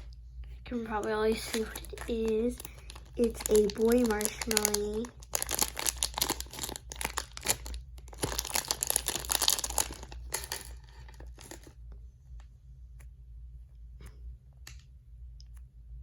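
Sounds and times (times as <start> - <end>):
packaging crinkling and tearing: 0.7 - 11.7.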